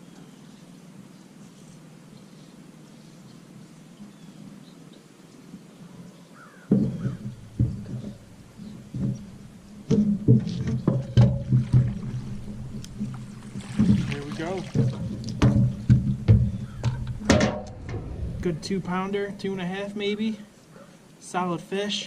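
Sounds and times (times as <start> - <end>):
faint bird chirp: 0.0 - 7.3
close handling knocks and rubbing: 6.7 - 18.0
steady low hum: 7.2 - 20.8.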